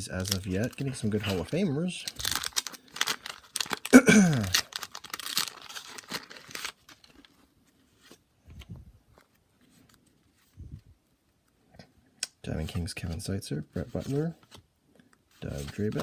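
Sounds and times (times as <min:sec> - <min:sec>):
wax paper wrapper tearing: 0:00.0 - 0:07.3
faint handling noise: 0:04.8 - 0:11.9, 0:12.5 - 0:16.0.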